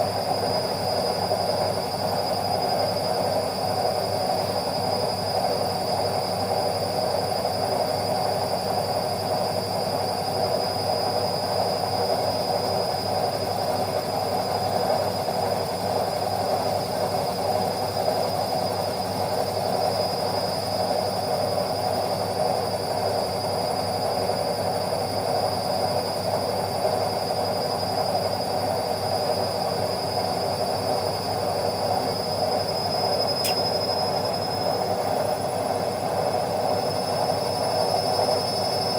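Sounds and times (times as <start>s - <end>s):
high steady whine: 32.8s - 34.3s
brief click: 33.4s - 33.8s.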